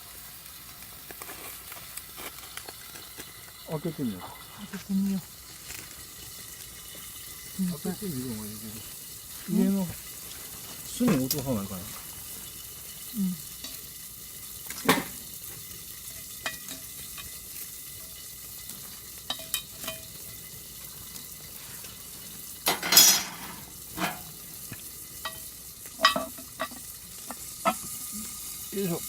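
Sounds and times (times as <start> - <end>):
food sizzling over charcoal: 0.0 - 29.0
utensils clinking on pan: 6.1 - 14.0, 14.6 - 28.1.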